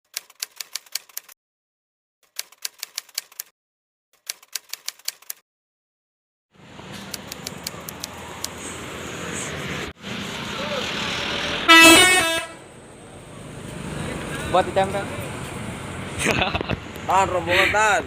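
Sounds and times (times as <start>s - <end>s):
typewriter key clicks: 0.2s - 1.3s, 2.3s - 3.5s, 4.2s - 5.4s
road traffic noise: 6.5s - 18.0s.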